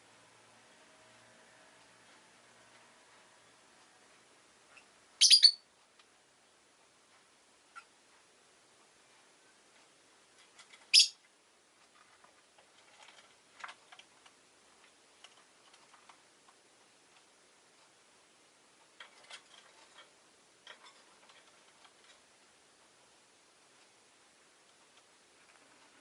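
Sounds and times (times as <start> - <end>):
lovebird chirping: 4.7 - 5.6, 10.9 - 11.2.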